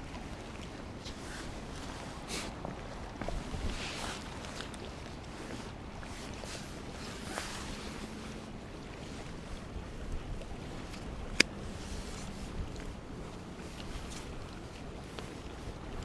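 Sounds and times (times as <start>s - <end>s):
sea water: 0.0s - 16.0s
wind: 0.0s - 16.0s.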